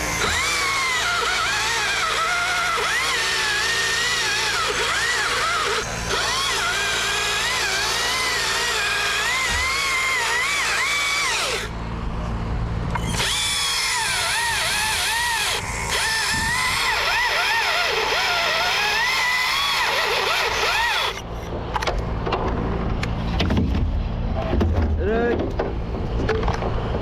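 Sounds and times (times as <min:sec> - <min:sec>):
chainsaw cutting wood: 0:00.0 - 0:11.8, 0:12.9 - 0:21.3
low machine hum: 0:00.0 - 0:27.0
scattered knocks: 0:23.4 - 0:27.0.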